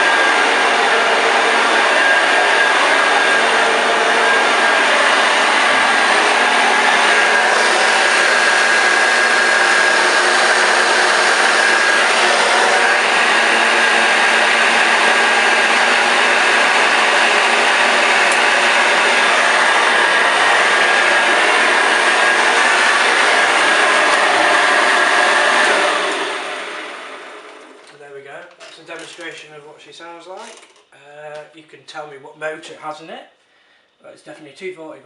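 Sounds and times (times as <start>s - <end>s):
vacuum cleaner running: 0.0s - 27.9s.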